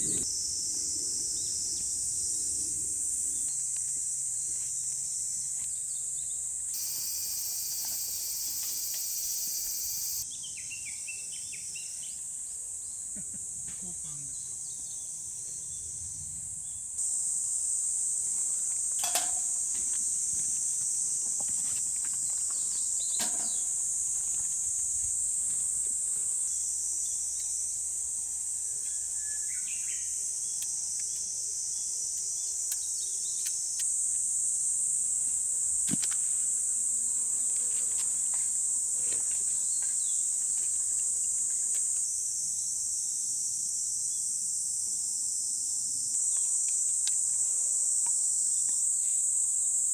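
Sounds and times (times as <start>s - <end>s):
insects buzzing: 0.0s - 49.9s
sharp insect clicks: 6.8s - 10.2s, 27.3s - 27.7s, 30.4s - 34.4s, 46.1s - 48.9s.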